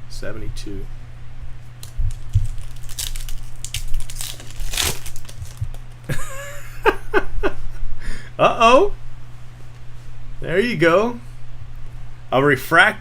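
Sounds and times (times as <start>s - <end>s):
wrapper crinkling and tearing: 1.8s - 6.1s.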